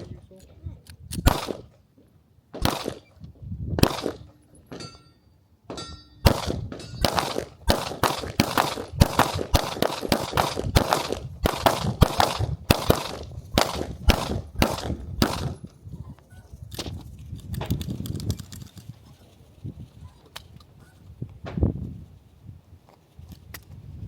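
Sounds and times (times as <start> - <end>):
gunshots with echo: 1.3 - 1.7, 2.6 - 3.1, 3.8 - 5.0, 5.7 - 15.6.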